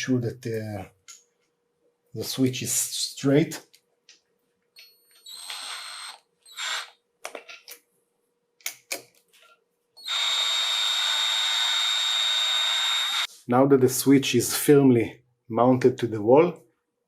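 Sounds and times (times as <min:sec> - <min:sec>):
power screwdriver motor whining: 0:04.8 - 0:07.0, 0:10.0 - 0:13.3.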